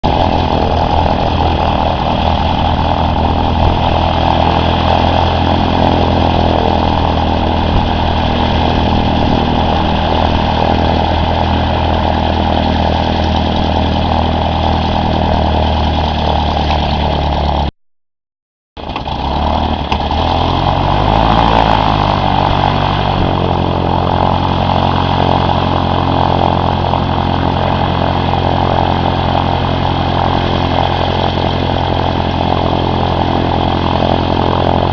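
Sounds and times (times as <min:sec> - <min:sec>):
aircraft engine running: 0:00.0 - 0:17.7, 0:18.8 - 0:34.9.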